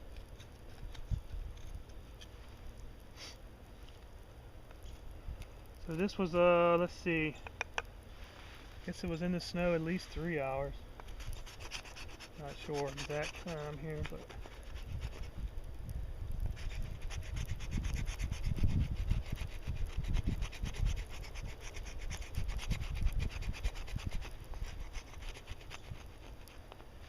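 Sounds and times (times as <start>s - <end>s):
wind rumble on microphone: 0.7s - 2.0s, 13.0s - 26.5s
scraping on wood stick: 11.0s - 15.4s, 16.4s - 26.9s.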